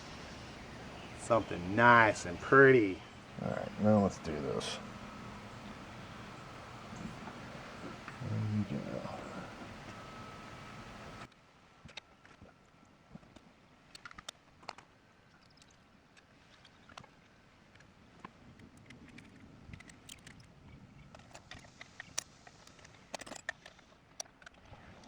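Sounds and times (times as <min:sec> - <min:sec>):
small metal parts clicking: 0:23.1 - 0:24.5.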